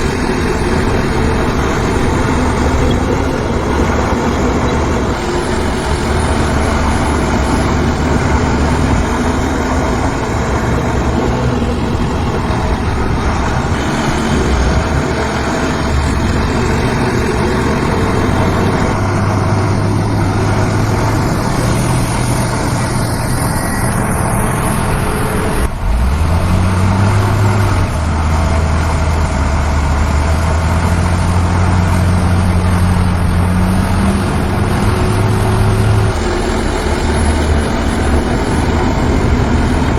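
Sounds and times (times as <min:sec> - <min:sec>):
engine revving: 0:00.0 - 0:39.9
heavy diesel engines droning: 0:00.0 - 0:39.9.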